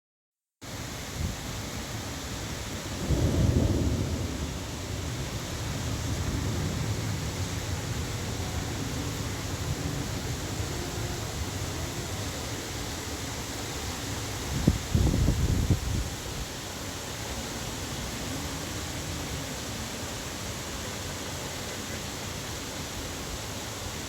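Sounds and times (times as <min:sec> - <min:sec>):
steady rain hiss: 0:00.6 - 0:24.0
thunder rumbling and cracking: 0:02.9 - 0:11.7.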